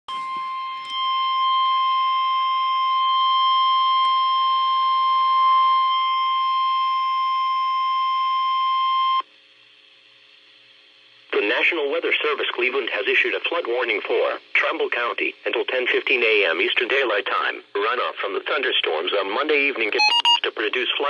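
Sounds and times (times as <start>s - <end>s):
high-pitched alarm tone: 20.0s - 20.4s.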